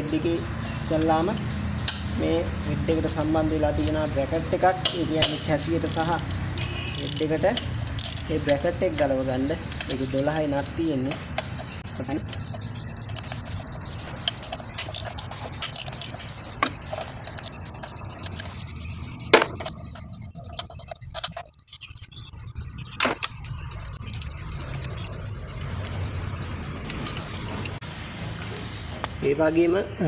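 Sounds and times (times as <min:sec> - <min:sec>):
metal tools clicking and clinking: 0:04.8 - 0:18.6, 0:26.8 - 0:27.8.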